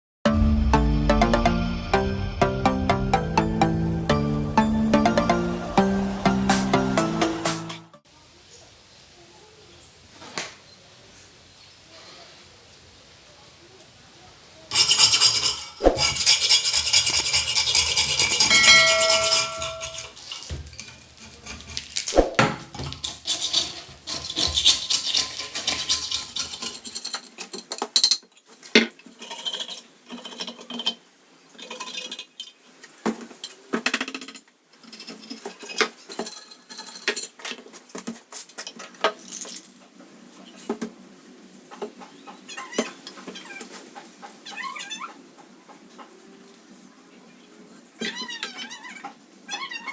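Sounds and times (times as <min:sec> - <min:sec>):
rasping metal scrape: 0:14.7 - 0:27.0
metal clinks and taps: 0:18.2 - 0:21.4.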